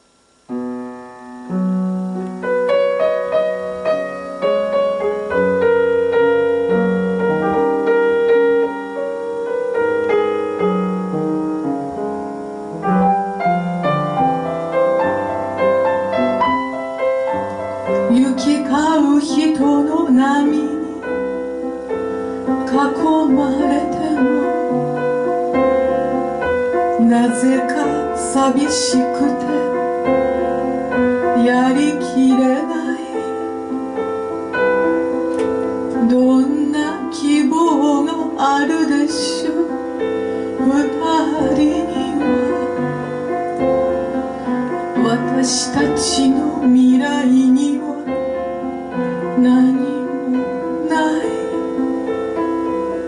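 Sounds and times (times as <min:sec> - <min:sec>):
slow piano piece: 0:00.0 - 0:53.0
woman singing: 0:17.9 - 0:21.4, 0:22.6 - 0:24.8, 0:27.0 - 0:30.1, 0:31.2 - 0:33.6, 0:35.9 - 0:43.0, 0:44.9 - 0:48.2, 0:49.0 - 0:51.9.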